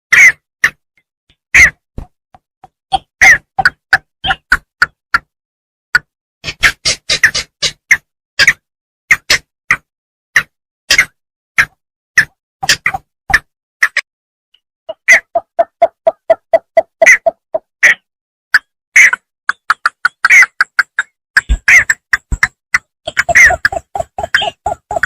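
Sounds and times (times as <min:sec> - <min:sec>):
bittern calling: 0:14.9 - 0:18.1, 0:23.0 - 0:25.0.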